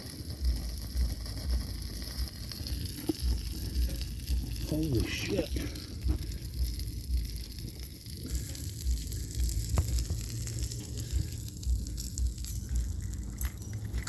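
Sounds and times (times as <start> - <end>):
oil sizzling and crackling: 0.0 - 14.0
sharp pops: 8.3 - 14.0.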